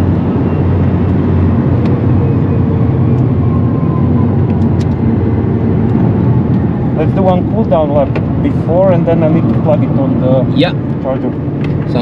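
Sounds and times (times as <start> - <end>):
road and wind noise in car: 0.0 - 12.0.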